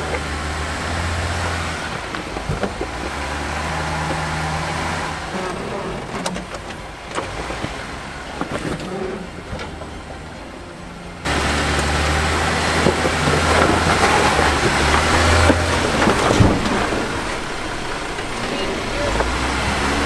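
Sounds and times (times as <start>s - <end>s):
tyres grinding over rock: 0.0s - 10.1s, 11.2s - 20.0s
engine running under load: 0.0s - 20.0s.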